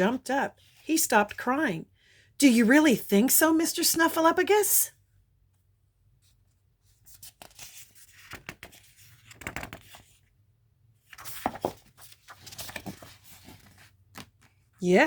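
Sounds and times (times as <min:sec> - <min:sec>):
paper page rustling and crinkling: 0:06.3 - 0:10.2, 0:11.0 - 0:14.8.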